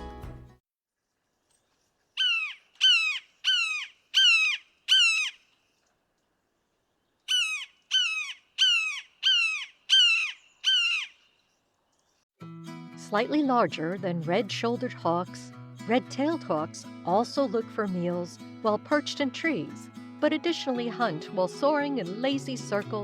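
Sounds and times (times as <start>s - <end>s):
hawk calling: 2.2s - 5.4s, 7.3s - 11.2s.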